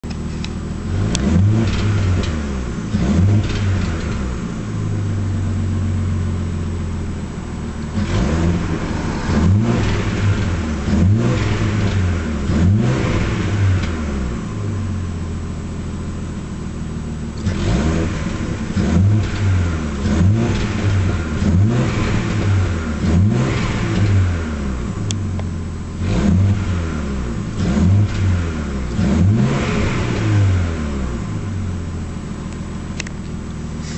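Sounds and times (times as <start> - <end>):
car engine revving: 0.0 - 33.9
engine backfire pops: 0.1 - 4.5, 7.8 - 14.2, 17.3 - 24.3, 27.6 - 30.5.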